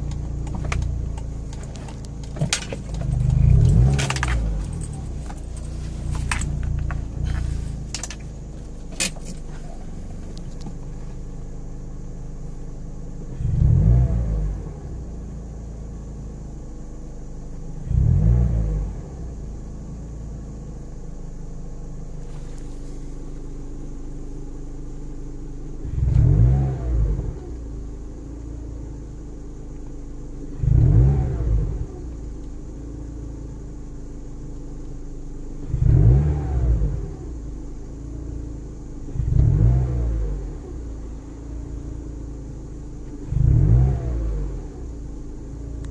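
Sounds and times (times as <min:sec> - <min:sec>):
engine throttle blips: 0:00.0 - 0:11.4
car engine idling: 0:00.0 - 0:45.9.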